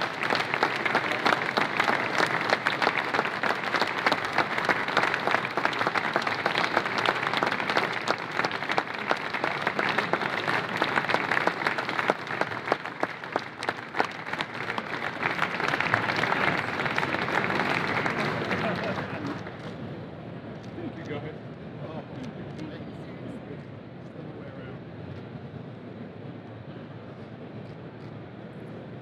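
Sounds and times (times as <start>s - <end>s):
audience applauding: 0.0s - 19.9s.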